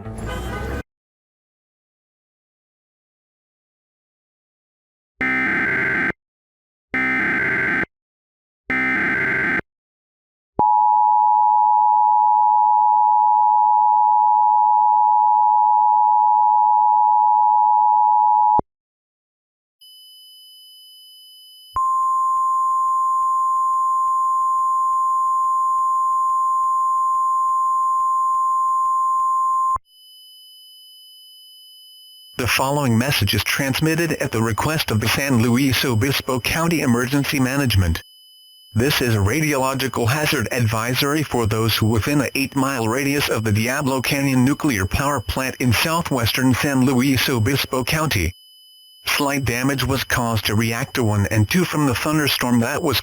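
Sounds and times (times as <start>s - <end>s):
steady single-pitch alert tone: 19.8s - 53.0s
two-tone attention signal: 49.0s - 52.8s.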